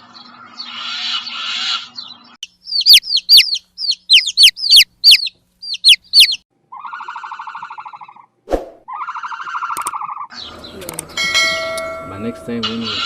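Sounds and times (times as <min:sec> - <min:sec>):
bird sharp high calls: 0:00.3 - 0:08.3, 0:12.6 - 0:13.0.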